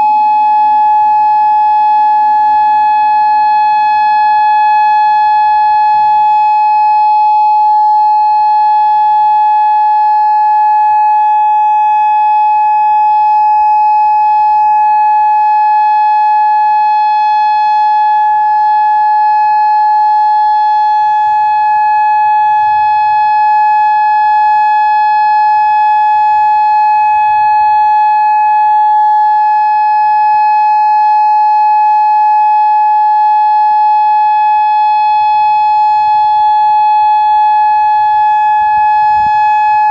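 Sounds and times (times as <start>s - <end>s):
electronic warning siren steady tone: 0.0s - 39.9s.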